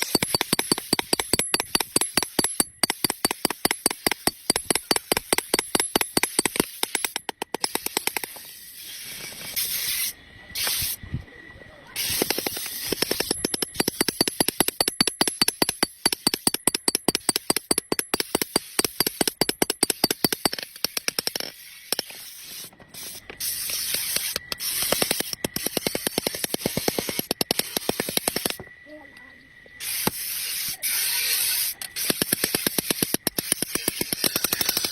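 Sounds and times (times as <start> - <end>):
rapid hammer blows on iron: 0.0 - 8.3, 12.0 - 21.0.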